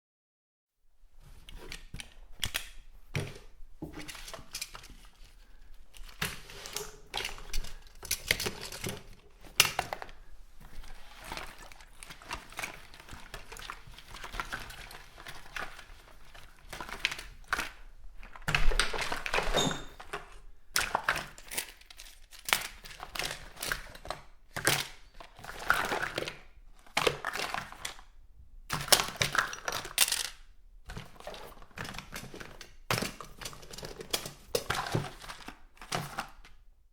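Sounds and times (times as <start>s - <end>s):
bottles clattering: 18.6s - 20.4s.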